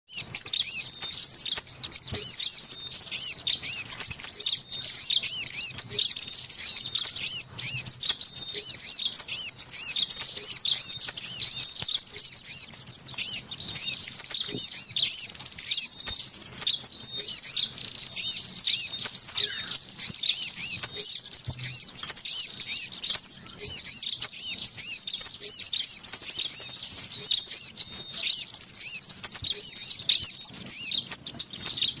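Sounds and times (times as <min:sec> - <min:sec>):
bulbul chirping: 0:00.1 - 0:32.0.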